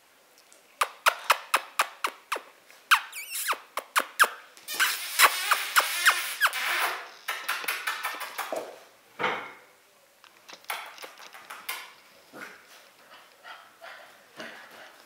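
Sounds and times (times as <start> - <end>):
puppies squealing: 2.9 - 7.0.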